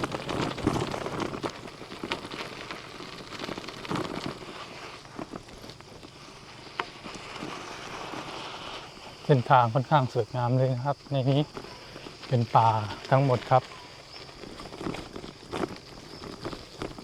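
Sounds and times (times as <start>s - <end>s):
bike clicks and knocks: 0.0s - 8.3s, 13.0s - 17.0s
bicycle tyres crunching on gravel: 0.0s - 17.0s.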